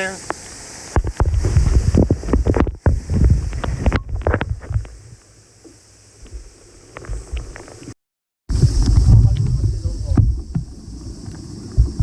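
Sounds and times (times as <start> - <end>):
wind buffeting microphone: 1.0 - 5.0, 8.5 - 12.0
microphone handling knocks: 8.5 - 10.7.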